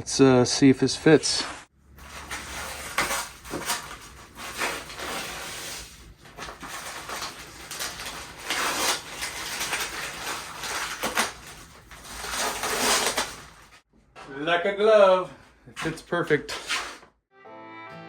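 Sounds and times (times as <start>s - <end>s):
scrapes of building materials: 1.2s - 13.8s, 15.6s - 17.1s
rustling and scuffing: 15.7s - 17.1s.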